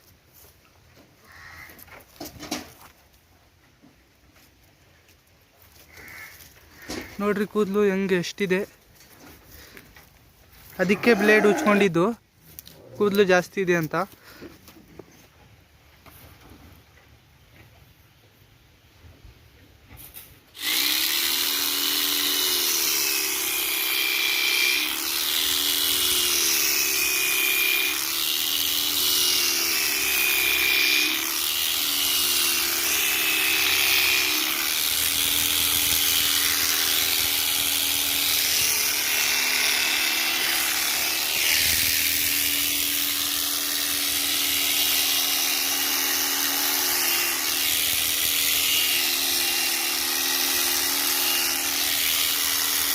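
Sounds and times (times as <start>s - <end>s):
electric shearing machine whine: 10.7s - 12.1s, 20.6s - 52.9s.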